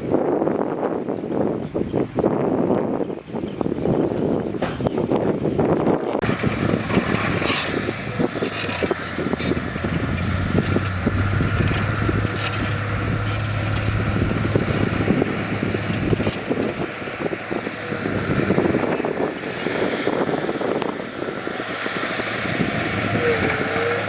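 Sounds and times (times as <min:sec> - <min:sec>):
diesel machinery engine drone: 0:06.2 - 0:24.0
metal clanks and knocks: 0:06.3 - 0:17.0.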